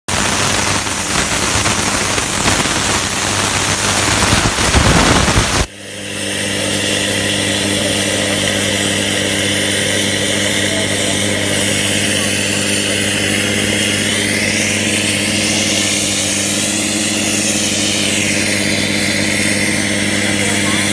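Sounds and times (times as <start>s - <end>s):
plasma cutter hissing and crackling: 0.1s - 5.7s, 9.9s - 20.9s
machine hum: 0.1s - 20.9s.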